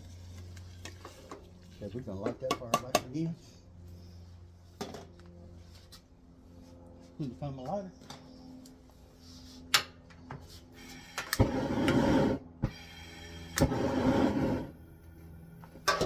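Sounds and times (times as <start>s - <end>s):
gas hissing: 10.8s - 14.8s.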